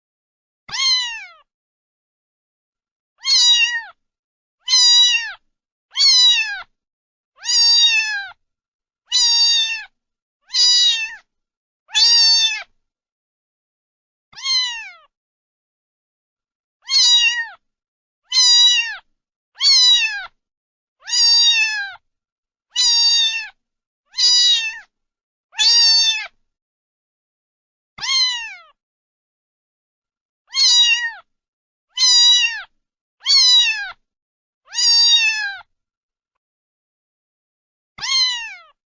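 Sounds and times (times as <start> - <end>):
cat meowing: 0.7 - 1.5, 3.2 - 4.0, 4.6 - 6.7, 7.4 - 8.4, 9.1 - 11.3, 11.9 - 12.7, 14.3 - 15.1, 16.8 - 17.6, 18.3 - 20.4, 21.0 - 22.0, 22.7 - 24.9, 25.6 - 26.4, 28.0 - 28.8, 30.5 - 31.3, 31.9 - 34.0, 34.7 - 35.7, 38.0 - 38.8.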